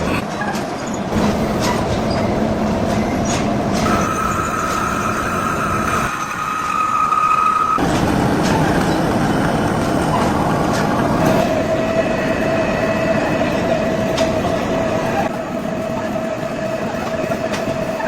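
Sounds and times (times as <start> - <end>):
lathe grinding: 3.8 - 15.3
metallic whine from cutting: 3.9 - 7.8.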